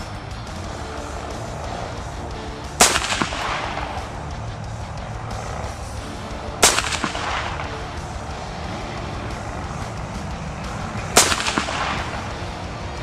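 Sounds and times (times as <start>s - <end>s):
rifle shot with echo: 2.6s - 8.2s, 10.8s - 12.7s.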